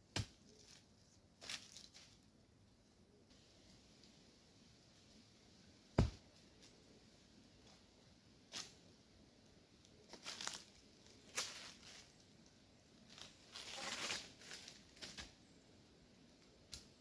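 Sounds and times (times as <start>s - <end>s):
rustling and crackling: 0.3s - 2.3s, 9.8s - 15.4s.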